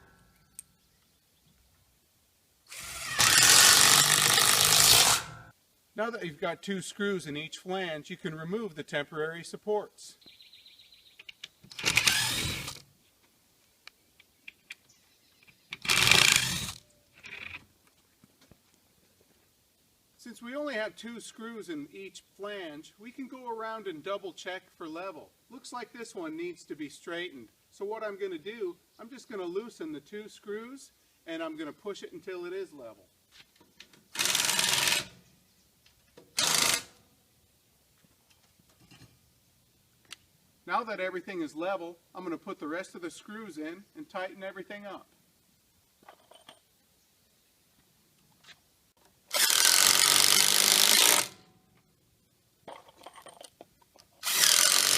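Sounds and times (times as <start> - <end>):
cordless drill running: 2.7 - 5.4, 11.8 - 12.8, 15.8 - 16.8, 34.2 - 35.1, 36.4 - 36.9, 49.3 - 51.4, 54.2 - 54.9.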